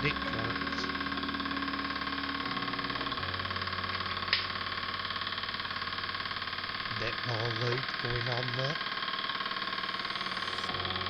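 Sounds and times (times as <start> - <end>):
model steam engine chuffing: 6.0 - 10.8.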